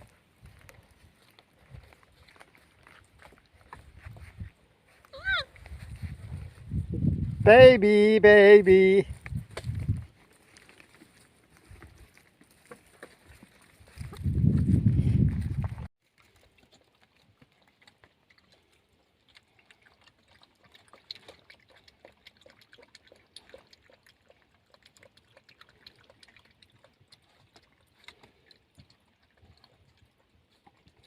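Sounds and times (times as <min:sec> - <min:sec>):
small clicks and wet ticks: 0:16.0 - 0:31.0.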